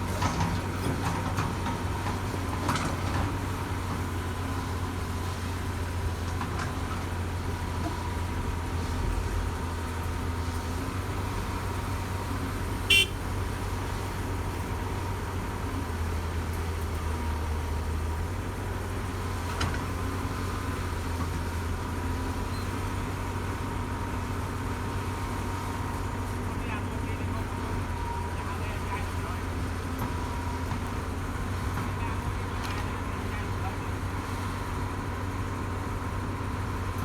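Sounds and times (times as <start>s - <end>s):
heavy diesel engine running: 0.0s - 37.0s.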